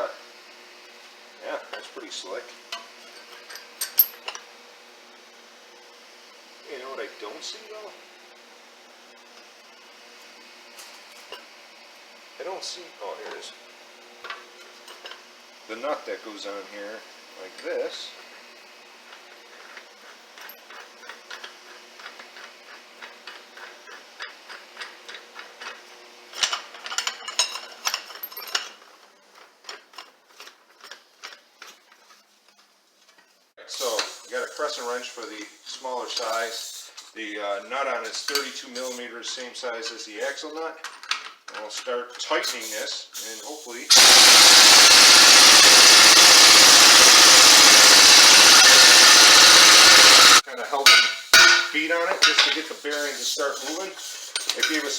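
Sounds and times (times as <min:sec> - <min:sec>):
impact wrench hammering on nut: 0:43.9 - 0:52.5
metal clanks: 0:50.1 - 0:52.7.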